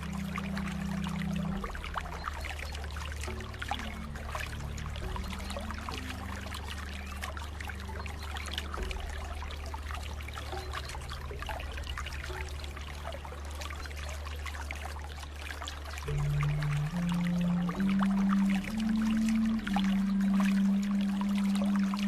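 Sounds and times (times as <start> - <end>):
low hum: 0.0 - 22.0
water trickling and splashing: 0.0 - 22.0.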